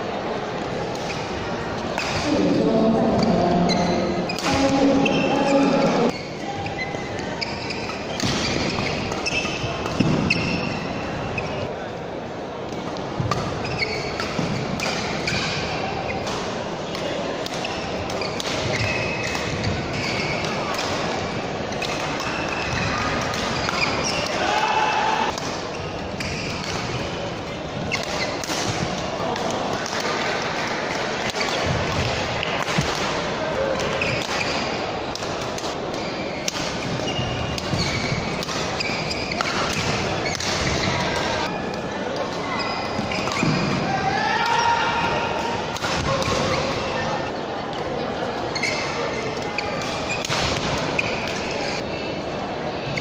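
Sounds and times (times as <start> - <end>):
faint voices: 0.0 - 7.5
court shoes squeaking: 0.8 - 11.9, 12.6 - 24.6, 25.2 - 44.6, 45.5 - 51.9.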